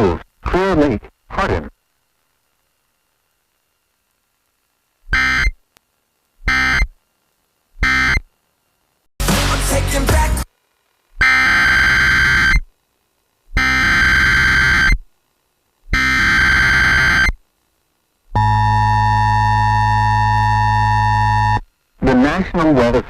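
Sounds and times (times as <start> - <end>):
steady attention tone: 6.4 - 7.0, 11.2 - 12.7, 13.5 - 15.0, 15.9 - 17.4
screeching digital data tones: 6.5 - 6.9, 11.2 - 12.7, 13.6 - 15.0, 15.9 - 17.4.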